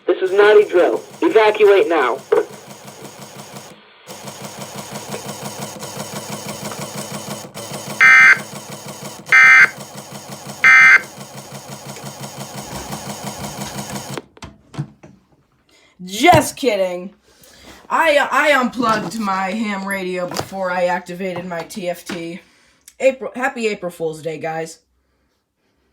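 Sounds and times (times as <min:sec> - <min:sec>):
steady buzzing hum: 0:00.3 - 0:11.1
digital data tone bursts: 0:08.0 - 0:08.5, 0:09.3 - 0:09.8, 0:10.6 - 0:11.1.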